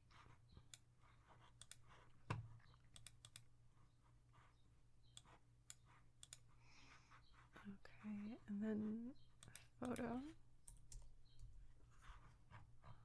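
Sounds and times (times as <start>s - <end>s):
keyboard and mouse clicks: 1.5s - 3.5s, 5.0s - 6.5s, 9.4s - 11.5s.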